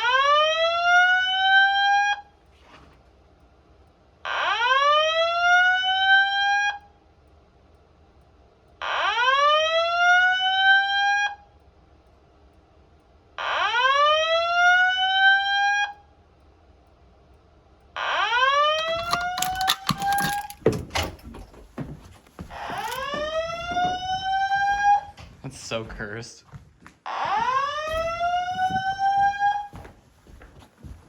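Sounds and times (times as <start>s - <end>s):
fire alarm whoop tone: 0.0s - 2.4s, 4.3s - 7.0s, 8.8s - 11.6s, 13.4s - 16.1s, 18.0s - 20.4s, 22.5s - 25.3s, 27.1s - 29.9s.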